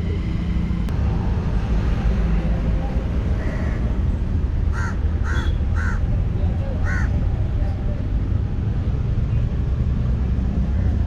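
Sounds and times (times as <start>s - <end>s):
crow cawing: 4.7s - 6.0s, 6.8s - 7.1s.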